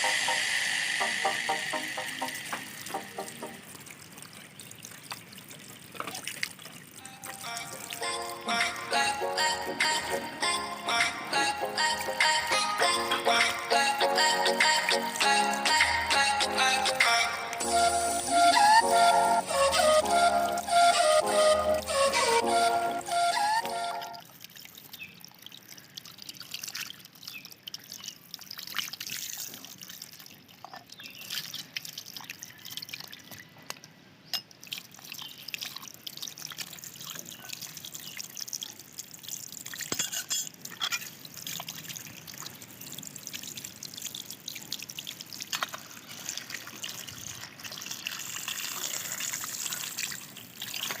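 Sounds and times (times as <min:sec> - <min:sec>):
water trickling and dripping: 0:01.6 - 0:10.3, 0:23.6 - 0:51.0
small splashes and ticks: 0:03.7 - 0:08.0, 0:24.2 - 0:51.0.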